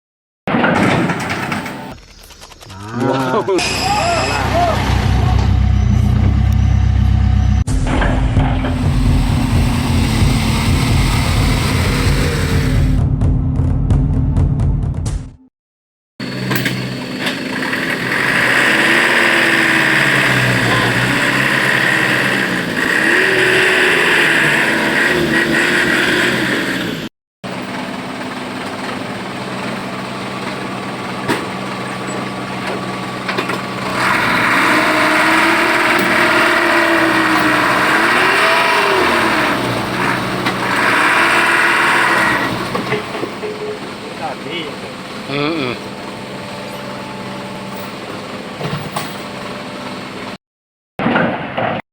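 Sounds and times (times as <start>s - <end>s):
diesel engine revving: 3.1s - 13.2s, 16.2s - 50.4s
loud hiss: 8.7s - 13.0s.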